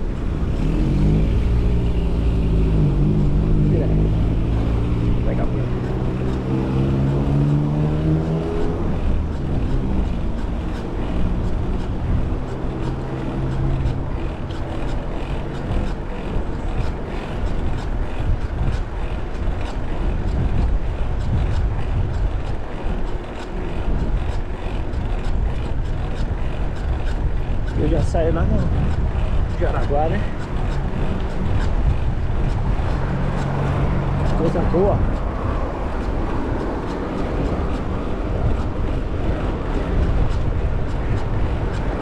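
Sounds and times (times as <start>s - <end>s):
vehicle engine: 0.0s - 42.0s
wind rumbling on microphone: 0.0s - 42.0s.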